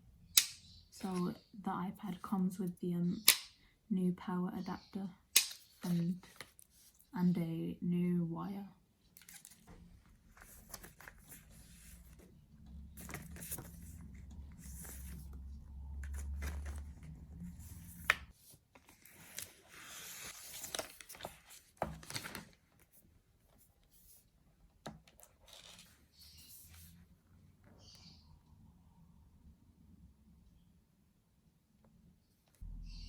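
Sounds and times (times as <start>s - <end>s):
packaging rustling and scraping: 9.2s - 22.8s.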